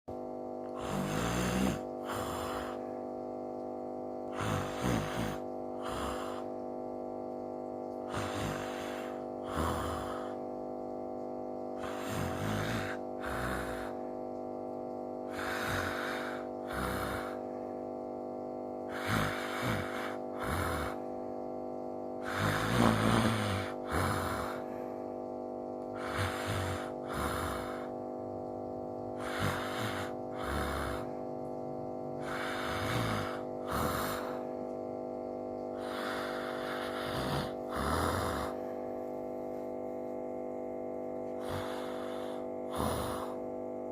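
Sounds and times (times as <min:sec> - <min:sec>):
person snoring: 0:00.1 - 0:43.9
steady hum: 0:00.1 - 0:43.9.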